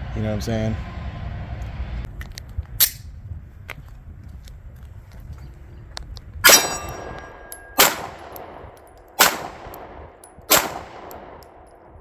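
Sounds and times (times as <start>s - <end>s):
metallic ring of steel target: 6.4s - 11.9s
pistol shots: 6.4s - 12.0s.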